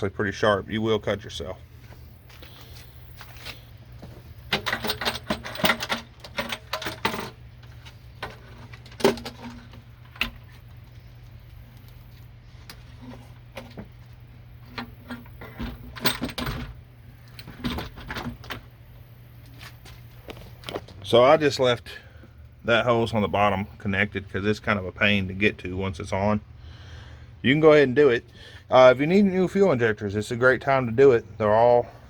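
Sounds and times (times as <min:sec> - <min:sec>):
steady low hum: 0:00.0 - 0:32.0
engine parts clinking and rattling: 0:03.2 - 0:11.9, 0:12.6 - 0:18.8.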